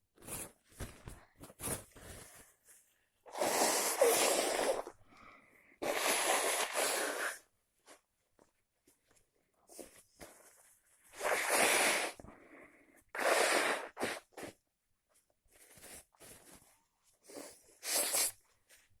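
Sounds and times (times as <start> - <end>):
quiet breaths: 4.8 - 5.8, 12.1 - 13.1
loud sneezes: 11.2 - 12.2.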